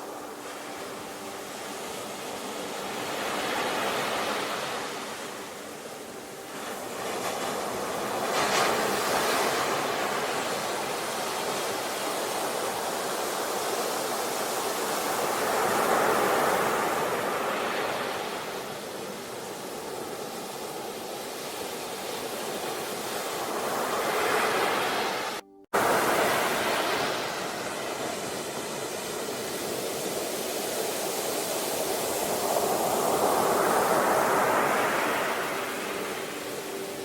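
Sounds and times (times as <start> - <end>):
ocean waves washing ashore: 0.0 - 37.0.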